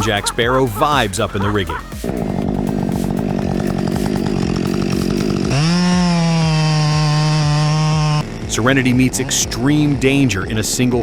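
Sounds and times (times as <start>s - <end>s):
chainsaw engine revving: 0.0s - 10.3s.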